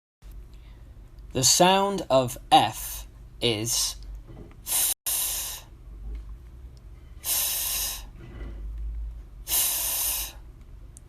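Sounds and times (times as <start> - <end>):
person saying fff: 1.4 - 4.0.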